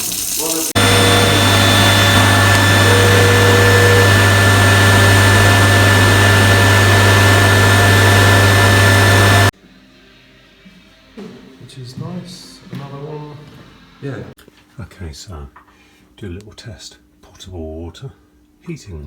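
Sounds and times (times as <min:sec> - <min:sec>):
pump motor humming: 0:00.0 - 0:09.5
tap running hard: 0:00.0 - 0:09.5.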